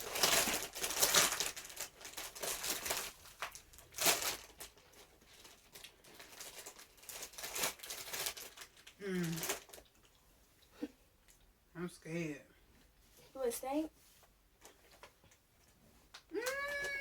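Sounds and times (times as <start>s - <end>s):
plastic chip bag crinkling: 0.0s - 10.2s, 16.4s - 17.0s.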